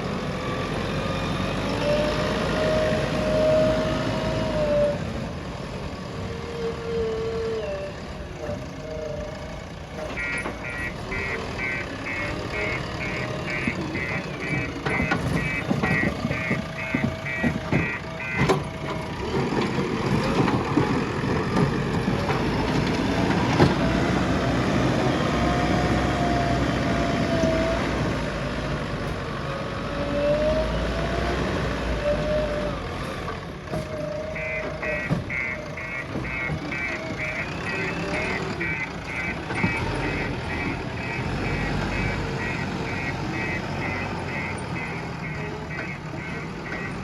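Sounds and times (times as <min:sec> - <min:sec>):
diesel engine under load: 0:00.0 - 0:47.0
reversing alarm beeping: 0:08.5 - 0:19.1, 0:33.9 - 0:47.0
machine knocks and clanks: 0:13.5 - 0:23.8.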